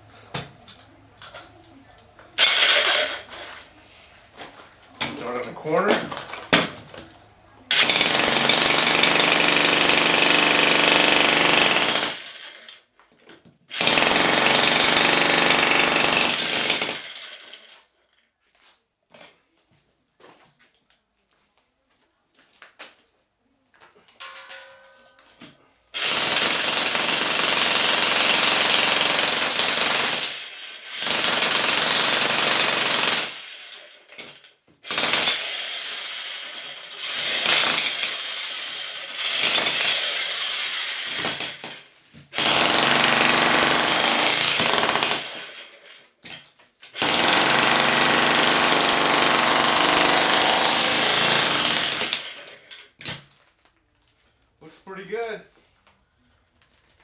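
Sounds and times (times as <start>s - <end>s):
jackhammer chiselling concrete: 7.7s - 12.6s, 13.7s - 17.4s, 26.0s - 33.8s, 34.9s - 41.8s, 42.4s - 45.8s, 47.0s - 52.7s.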